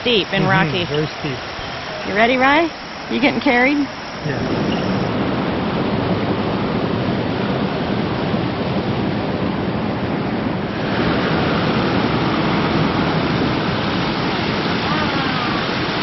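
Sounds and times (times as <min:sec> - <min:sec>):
waterfall rushing: 0:00.0 - 0:05.8, 0:10.6 - 0:16.0.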